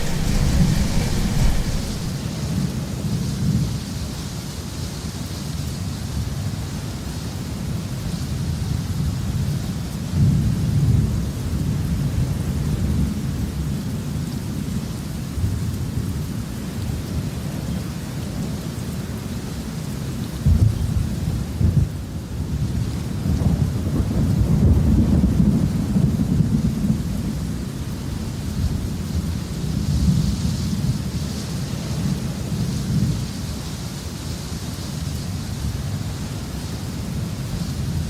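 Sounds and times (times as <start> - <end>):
rolling thunder: 0.0 - 2.6
rain hiss: 0.0 - 38.0.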